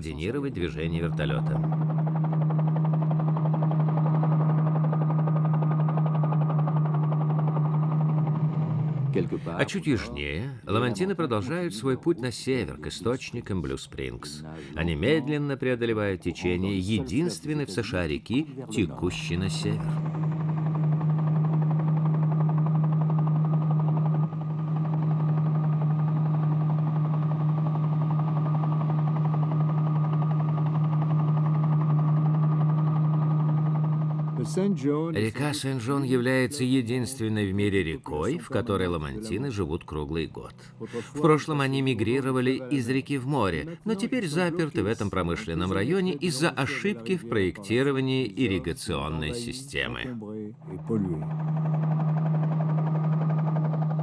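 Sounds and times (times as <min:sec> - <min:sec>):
helicopter engine and rotor: 0:19.9 - 0:34.4, 0:51.2 - 0:54.0.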